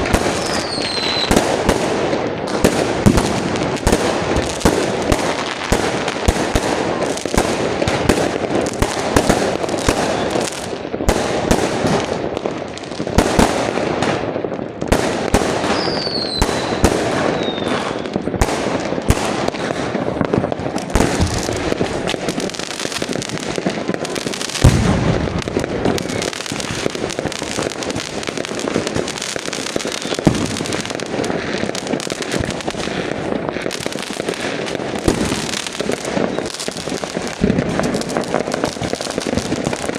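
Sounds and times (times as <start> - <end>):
falling firework whistle: 0.0 - 1.5, 15.6 - 18.3, 36.1 - 36.8
fireworks bangs and crackling: 0.0 - 39.9
loud firework boom: 24.6 - 26.1.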